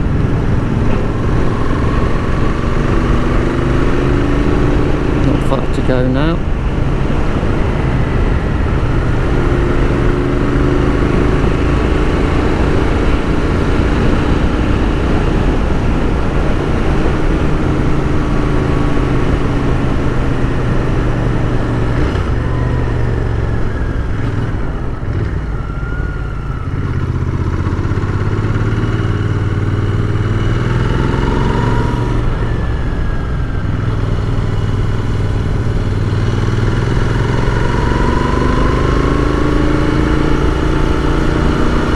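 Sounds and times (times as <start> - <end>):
motorcycle engine running: 0.0 - 41.9
wind noise: 6.4 - 26.4.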